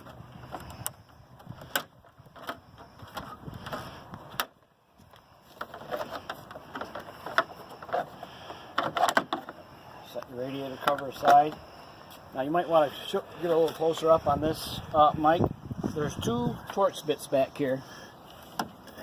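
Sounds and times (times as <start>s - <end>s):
small knocks and rattles: 0.0s - 9.8s.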